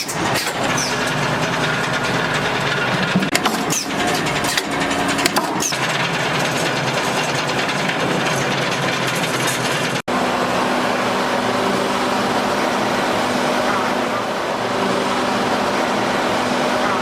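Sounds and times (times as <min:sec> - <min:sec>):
machinery hum and whir: 0:00.0 - 0:17.0.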